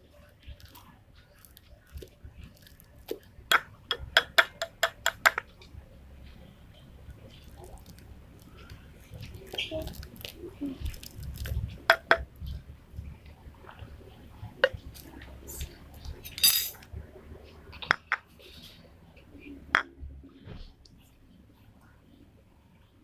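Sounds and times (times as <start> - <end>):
utensil clinking on containers: 16.2 - 16.8.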